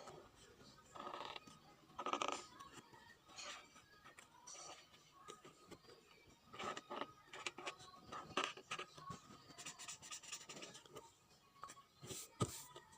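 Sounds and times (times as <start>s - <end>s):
scratching and rustling of paper: 6.5s - 12.9s.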